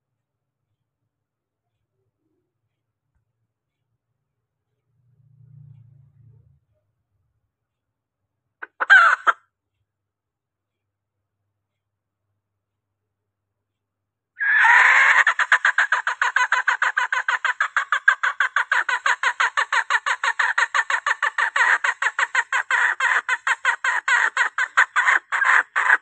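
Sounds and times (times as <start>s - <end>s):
hen clucking calls: 8.6s - 9.4s, 14.4s - 26.0s.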